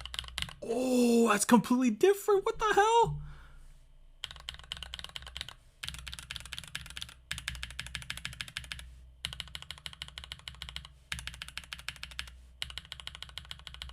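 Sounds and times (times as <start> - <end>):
fast mechanical keyboard typing: 0.0 - 0.6, 4.2 - 13.9.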